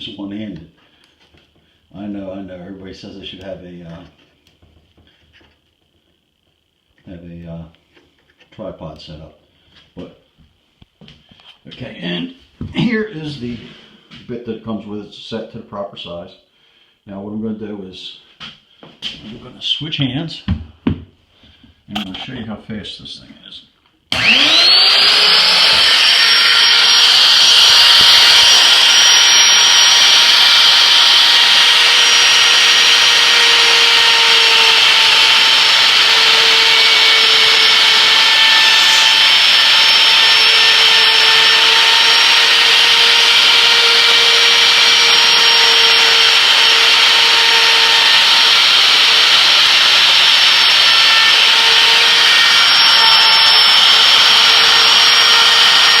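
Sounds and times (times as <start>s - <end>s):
electric wood router whining: 24.1s - 56.0s.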